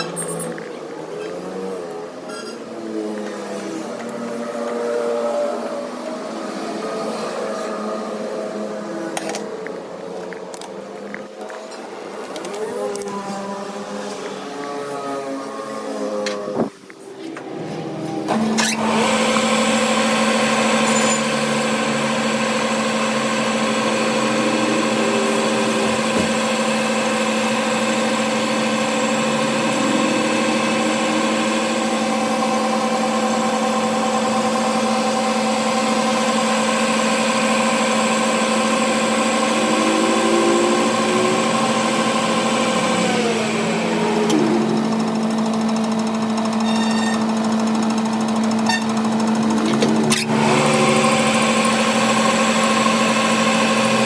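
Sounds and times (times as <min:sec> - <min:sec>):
electric machine humming: 0:18.3 - 0:54.0.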